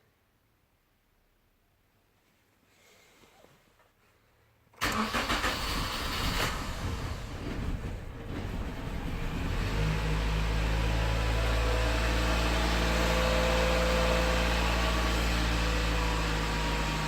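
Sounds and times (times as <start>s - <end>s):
engine starter cranking: 4.8s - 7.7s.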